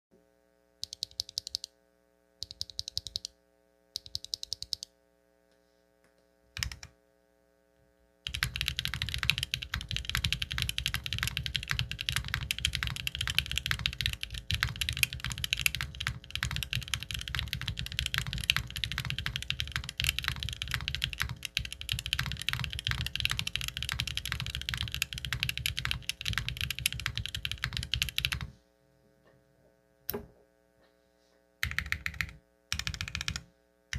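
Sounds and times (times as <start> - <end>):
mechanical keyboard typing: 0.8 - 1.7, 2.4 - 3.3, 4.0 - 4.9, 6.6 - 6.9, 8.3 - 28.5, 31.6 - 33.4.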